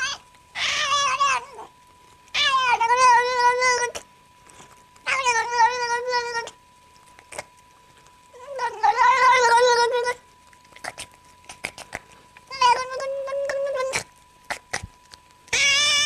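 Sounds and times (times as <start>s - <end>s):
cat yowling: 0.0s - 1.7s, 2.3s - 4.0s, 5.0s - 6.6s, 8.4s - 10.2s, 12.5s - 14.1s, 15.5s - 16.0s.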